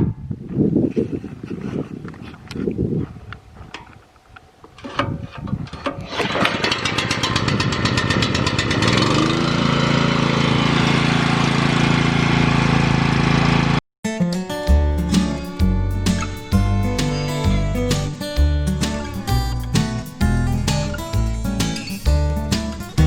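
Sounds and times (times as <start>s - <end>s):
engine cranking and starting: 5.9s - 11.1s.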